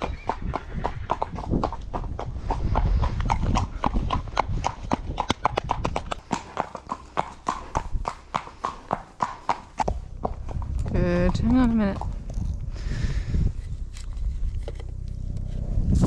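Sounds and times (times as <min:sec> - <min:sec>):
horse hooves clip-clopping: 0:00.0 - 0:12.7
low rumble: 0:09.8 - 0:16.0.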